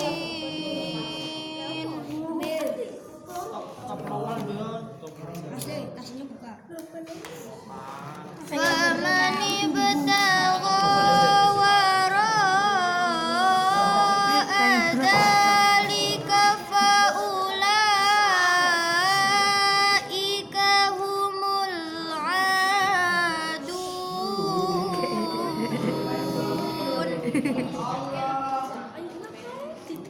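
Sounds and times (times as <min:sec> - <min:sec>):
person chanting recitation: 0:00.0 - 0:02.5, 0:07.8 - 0:28.3.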